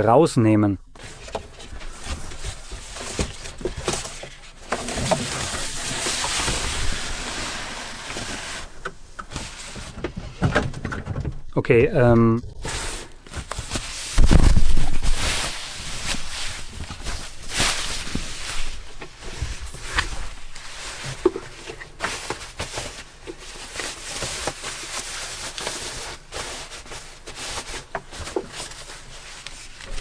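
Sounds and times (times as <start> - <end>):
cardboard scraping and rustling: 1.0 - 30.0
heavy thump: 14.2 - 15.3.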